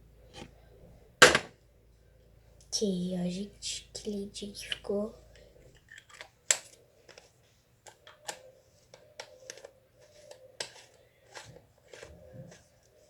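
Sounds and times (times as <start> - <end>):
faint steady hum: 0.0 - 13.0
plastic pots and lids clicking: 5.8 - 12.7.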